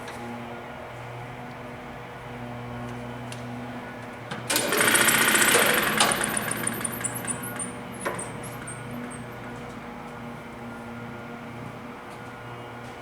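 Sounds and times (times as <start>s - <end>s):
scroll saw humming: 4.5s - 9.4s.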